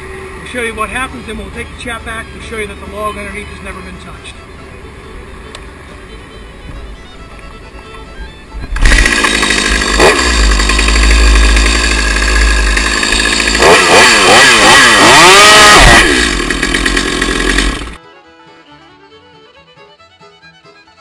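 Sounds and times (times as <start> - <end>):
chainsaw running at full throttle: 8.7 - 18.0.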